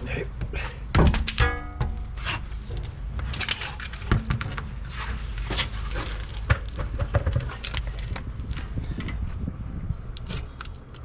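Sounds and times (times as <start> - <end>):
steady low rumble: 1.2 - 6.6.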